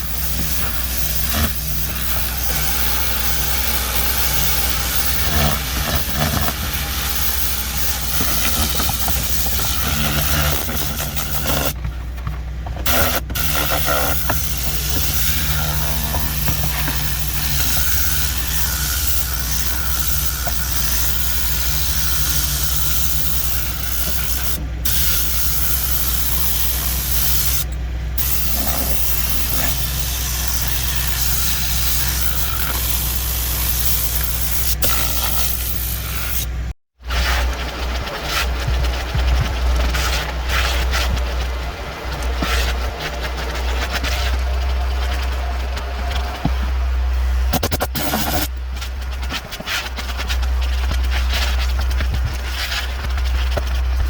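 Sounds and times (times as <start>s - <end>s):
compressed air blasting: 0.0s - 11.8s, 12.8s - 36.7s, 47.5s - 48.5s
motor humming: 0.0s - 36.8s.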